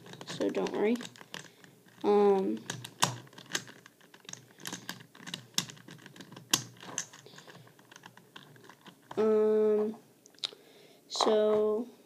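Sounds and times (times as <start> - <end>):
plastic cube pieces clicking: 0.0 - 9.2.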